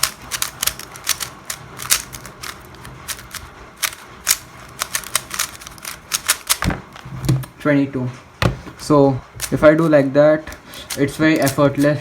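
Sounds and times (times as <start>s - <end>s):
puzzle cube clicking as turned: 0.0s - 6.7s.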